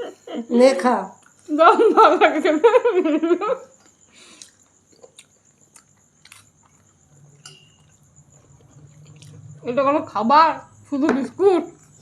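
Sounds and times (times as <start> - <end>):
person chewing dry biscuits: 3.8 - 9.6.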